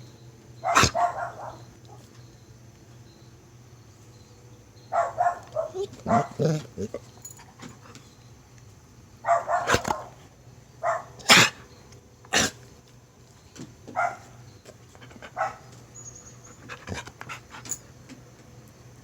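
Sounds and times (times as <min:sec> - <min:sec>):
dog coughing: 0:00.6 - 0:01.6, 0:05.0 - 0:07.7, 0:09.3 - 0:10.1, 0:10.9 - 0:11.7, 0:12.3 - 0:12.7, 0:16.7 - 0:17.5.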